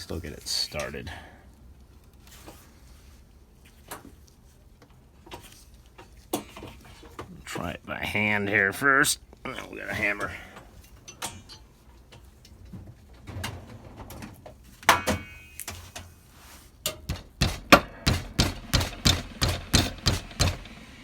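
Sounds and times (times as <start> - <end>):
hammer striking metal terminal: 14.9 - 15.8, 16.9 - 20.7.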